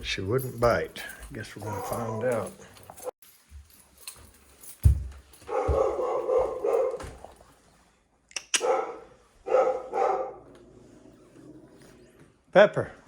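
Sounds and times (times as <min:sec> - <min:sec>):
dog barking: 0:01.6 - 0:02.4, 0:05.5 - 0:07.1, 0:08.6 - 0:10.5.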